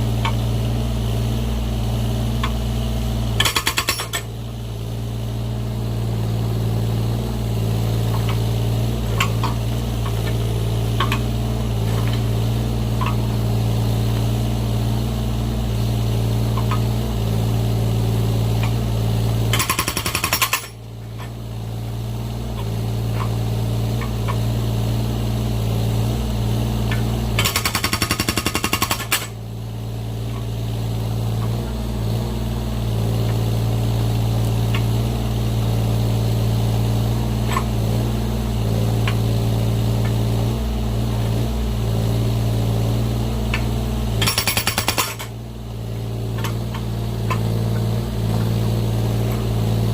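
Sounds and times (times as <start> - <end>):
excavator engine running: 0.0 - 49.9
hydraulic breaker hammering: 3.4 - 4.4, 19.4 - 21.4, 26.9 - 29.4, 43.4 - 45.5.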